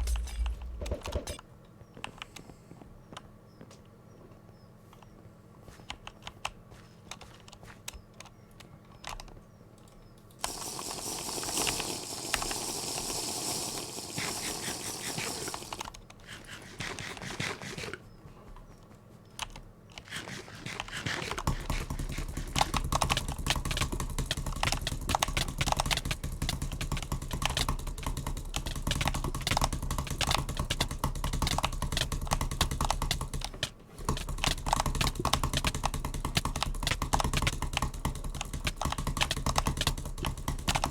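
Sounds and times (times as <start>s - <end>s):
low hum: 0.0s - 1.4s.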